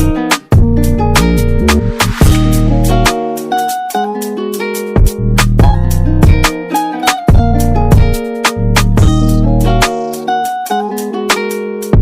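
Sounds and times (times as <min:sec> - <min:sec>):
bass: 0:00.0 - 0:03.1, 0:05.0 - 0:06.5, 0:07.3 - 0:09.9
drum hits: 0:00.0 - 0:03.9, 0:05.0 - 0:10.0
guitar: 0:00.0 - 0:12.0.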